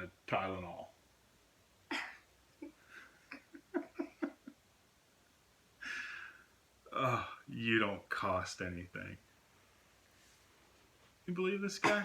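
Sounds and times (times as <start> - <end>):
breathy laughter: 1.9 - 4.6.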